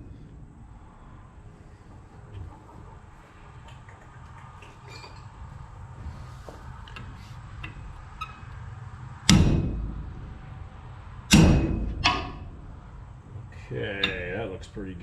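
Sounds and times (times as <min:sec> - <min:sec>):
hammer striking metal pin: 0:09.3 - 0:10.0, 0:11.3 - 0:12.6.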